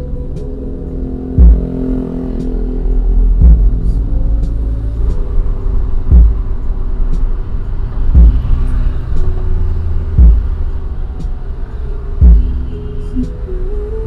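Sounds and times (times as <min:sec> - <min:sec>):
car engine and road rumble: 0:00.0 - 0:14.0
deep falling bass thumps: 0:01.4 - 0:02.0, 0:03.2 - 0:04.6, 0:06.1 - 0:06.6, 0:08.2 - 0:08.6, 0:10.2 - 0:10.7, 0:12.2 - 0:12.6.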